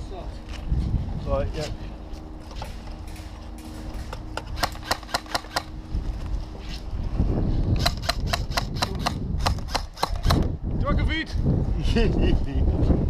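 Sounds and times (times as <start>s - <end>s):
low rumble: 0.0s - 13.0s
airsoft gun shots: 4.5s - 5.7s, 7.8s - 10.5s.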